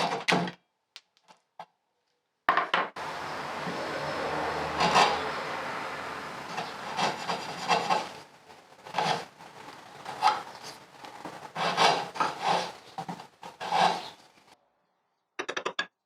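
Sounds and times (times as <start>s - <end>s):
hand tool rasping wood: 3.3s - 5.5s, 6.3s - 14.5s.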